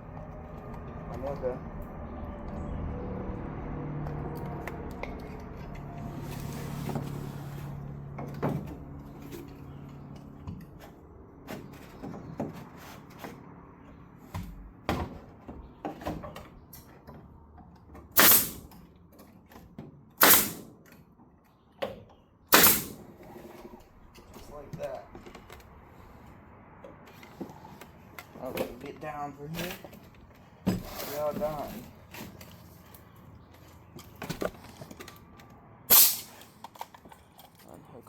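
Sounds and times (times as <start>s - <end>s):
nail gun firing staples: 18.2s - 18.7s, 20.2s - 20.8s, 22.5s - 23.1s, 35.9s - 36.4s.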